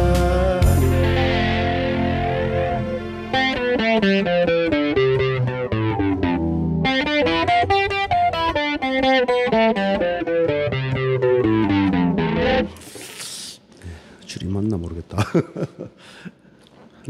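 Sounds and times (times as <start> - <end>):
backing track with bass line: 0.0 - 12.8
plucked guitar melody: 0.0 - 12.8.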